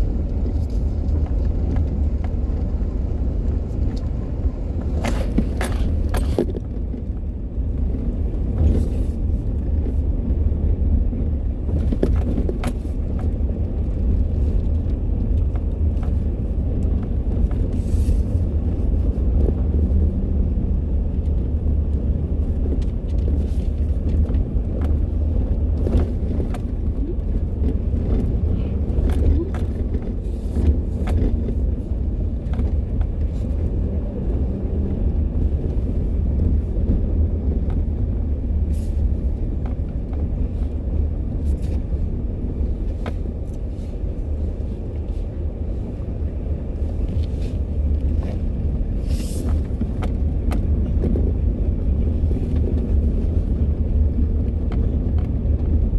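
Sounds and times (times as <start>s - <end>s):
engine and tyres rumbling: 0.0s - 55.9s.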